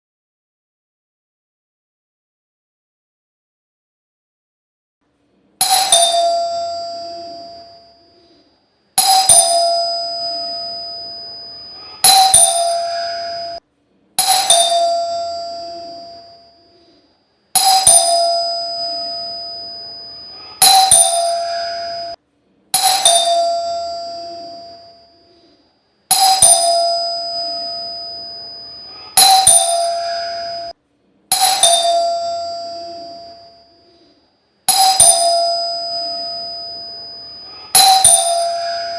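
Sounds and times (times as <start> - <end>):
doorbell ringing: 5.6 - 8.3, 9.0 - 13.6, 14.2 - 16.8, 17.6 - 22.2, 22.8 - 25.3, 26.1 - 34.0, 34.7 - 38.9.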